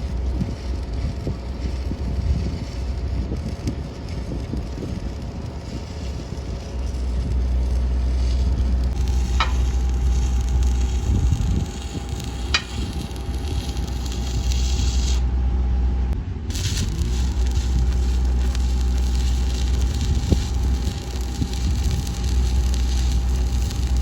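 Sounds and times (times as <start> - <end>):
welding arc crackling: 0.0 - 15.3, 16.4 - 24.0
engine humming: 0.0 - 24.0.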